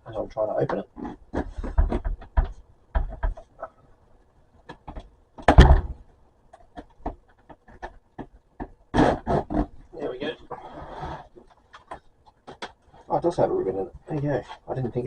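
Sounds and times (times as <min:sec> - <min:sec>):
loud thump: 0:05.4 - 0:06.0.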